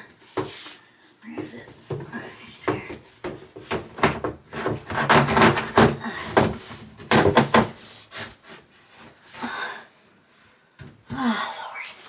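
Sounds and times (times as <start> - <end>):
knocks and bangs: 2.6 - 7.8.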